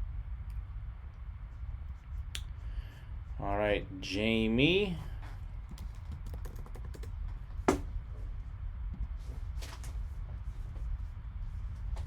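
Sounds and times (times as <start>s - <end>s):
low steady hum: 0.0s - 12.0s
light clicks and taps at a desk: 5.7s - 7.8s.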